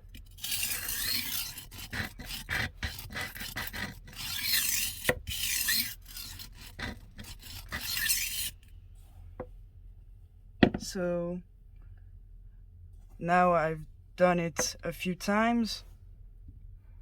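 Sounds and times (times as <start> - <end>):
sharpener grinding knife blade: 0.0 - 8.6.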